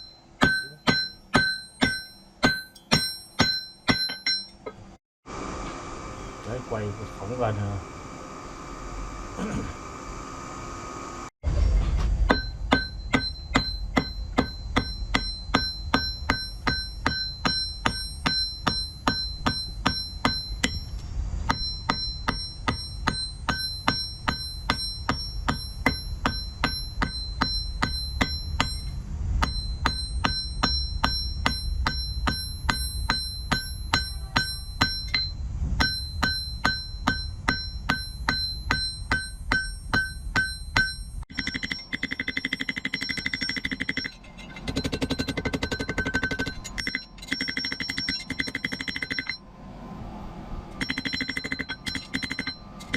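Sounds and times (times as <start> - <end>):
hammer striking iron on anvil: 0.0 - 5.0, 12.0 - 49.4, 50.8 - 52.9
low rumble: 27.6 - 33.1, 49.3 - 52.9.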